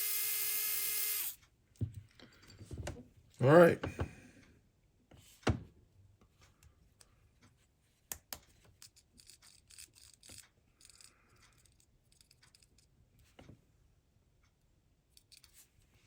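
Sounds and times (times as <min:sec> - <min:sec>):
small parts clicking: 0:08.1 - 0:13.0, 0:15.1 - 0:15.7.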